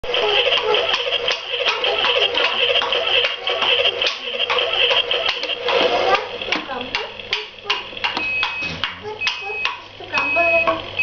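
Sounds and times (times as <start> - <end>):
toy car sound effects: 0.0 - 6.4.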